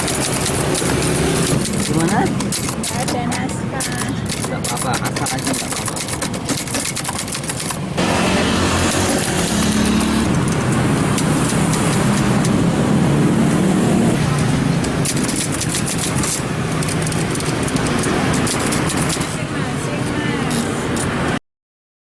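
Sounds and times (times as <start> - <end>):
rapid clicks: 0.0 - 8.0, 14.1 - 19.4
motor vehicle running: 0.0 - 21.4.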